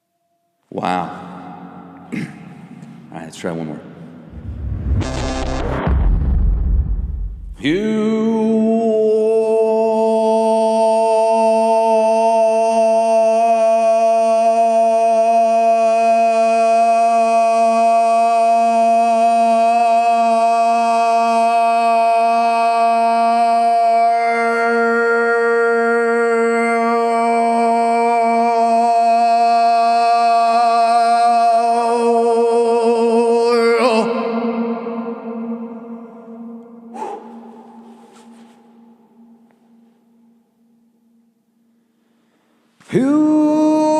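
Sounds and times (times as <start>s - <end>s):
man throat singing low drone: 0.8s - 2.8s, 7.3s - 39.4s.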